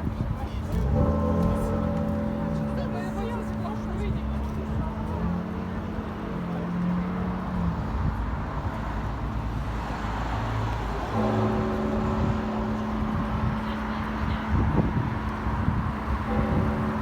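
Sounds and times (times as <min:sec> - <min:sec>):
street traffic rumble: 0:00.0 - 0:17.0
church bells ringing: 0:00.7 - 0:06.6, 0:10.9 - 0:17.0.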